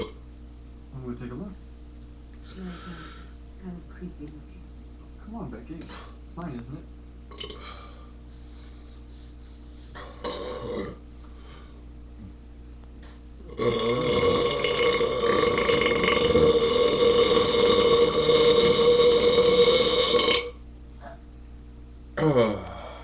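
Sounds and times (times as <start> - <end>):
long loud burp: 10.0 - 11.0, 13.4 - 21.2, 22.2 - 23.0.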